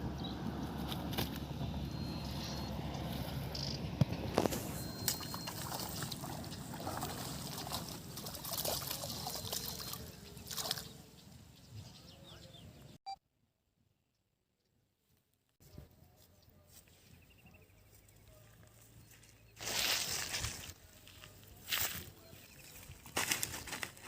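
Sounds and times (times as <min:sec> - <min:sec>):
water trickling and splashing: 0:04.3 - 0:11.0.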